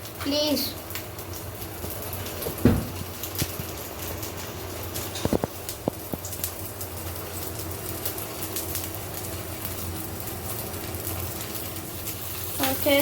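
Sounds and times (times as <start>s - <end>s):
patty sizzling in oil: 0.0s - 13.0s
sharp knocks: 2.6s - 3.0s.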